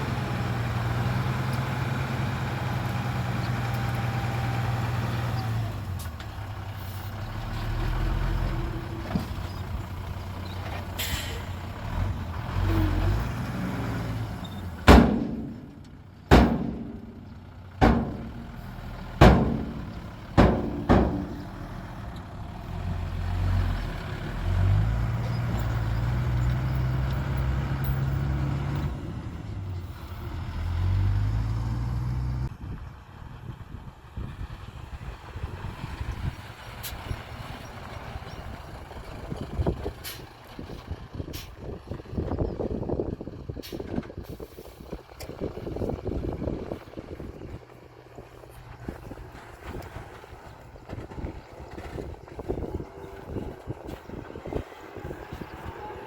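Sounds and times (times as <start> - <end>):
heavy diesel engines running: 0.0 - 56.0
loud bangs: 14.8 - 21.7.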